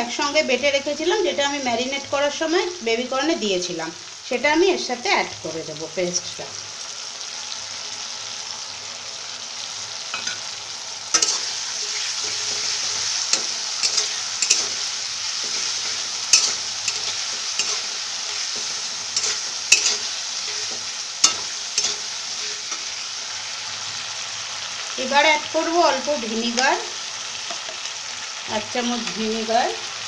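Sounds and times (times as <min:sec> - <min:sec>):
vegetables sizzling in a pan: 0:00.0 - 0:30.0.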